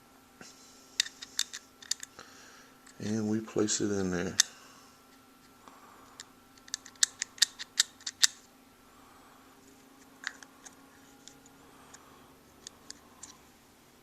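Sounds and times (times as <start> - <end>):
clicks of small hard parts: 1.0 - 2.1, 6.2 - 8.4.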